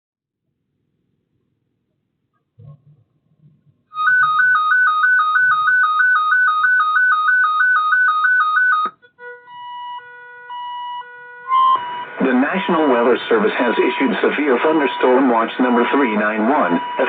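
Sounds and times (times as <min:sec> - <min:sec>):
electronic beeps: 0:04.0 - 0:09.0, 0:10.6 - 0:17.0
warbling two-tone alarm beep: 0:04.0 - 0:17.0
steady electronic tone: 0:09.2 - 0:17.0.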